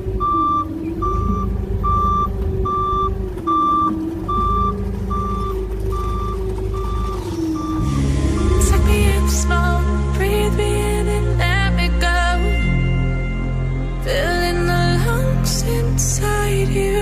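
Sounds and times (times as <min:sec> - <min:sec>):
reversing alarm beeping: 0:00.0 - 0:09.6
forklift engine revving: 0:00.0 - 0:11.5.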